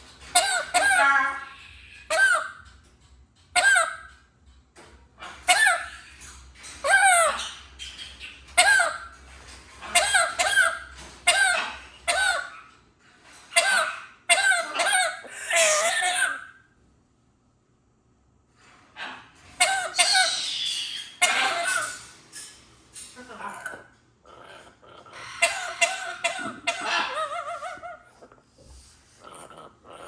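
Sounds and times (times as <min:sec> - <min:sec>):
bird harsh cough-like calls: 0:00.2 - 0:01.3, 0:09.8 - 0:12.6, 0:13.5 - 0:16.4, 0:19.6 - 0:22.0, 0:25.1 - 0:27.9.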